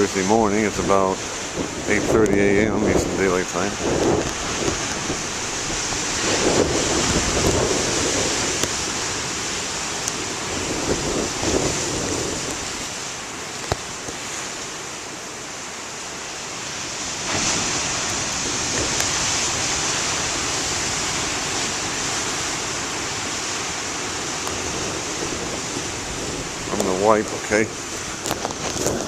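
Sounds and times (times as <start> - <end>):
wind buffeting microphone: 0.0 - 15.1, 16.8 - 29.0
storm surf breaking: 0.0 - 29.0.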